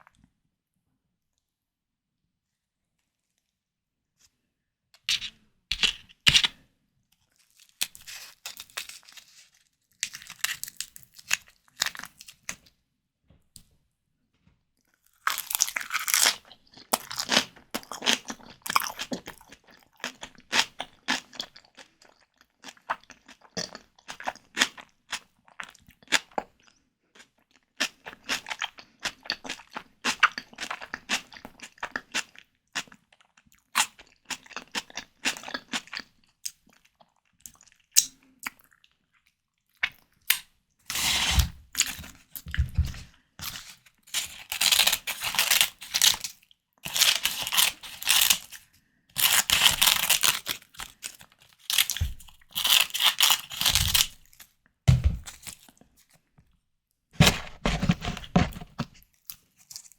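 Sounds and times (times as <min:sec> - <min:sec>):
chewing crunches: 0:07.3 - 0:12.7, 0:15.1 - 0:48.6, 0:49.2 - 0:54.5.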